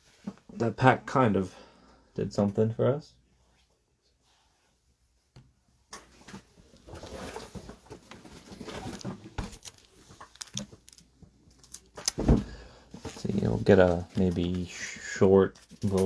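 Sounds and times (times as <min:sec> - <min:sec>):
cards rustling: 0:08.2 - 0:12.2, 0:13.0 - 0:15.0.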